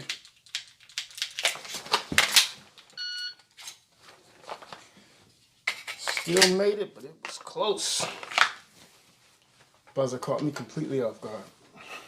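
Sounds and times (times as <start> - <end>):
electronic timer beep: 3.0 - 3.4.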